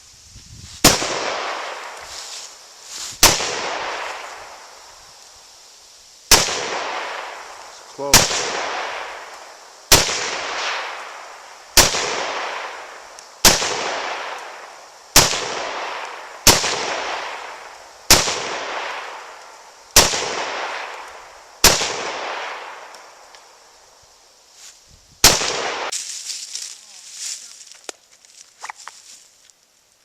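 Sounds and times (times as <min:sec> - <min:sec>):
gunshots with long echo: 0:00.8 - 0:02.0, 0:03.2 - 0:04.8, 0:06.3 - 0:22.9, 0:25.2 - 0:25.9.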